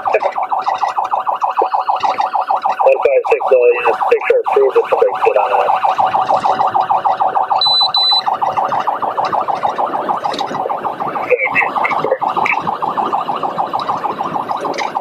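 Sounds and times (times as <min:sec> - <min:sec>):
police siren rapid cycle: 0:00.0 - 0:15.0
short high electronic beeps: 0:07.6 - 0:08.2.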